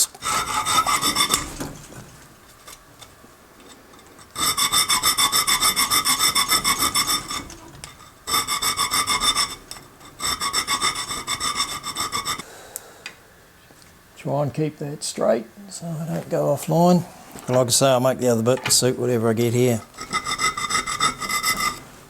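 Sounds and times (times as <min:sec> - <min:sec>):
hand file on steel: 0:00.0 - 0:03.1, 0:04.0 - 0:12.5, 0:19.4 - 0:22.0.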